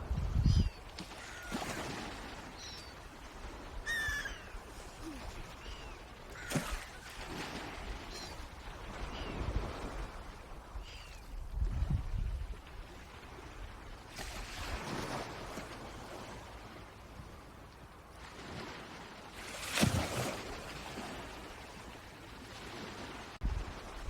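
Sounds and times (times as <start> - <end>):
wind and water rushing: 0.0 - 24.0
birds calling: 0.4 - 3.1, 3.7 - 9.5.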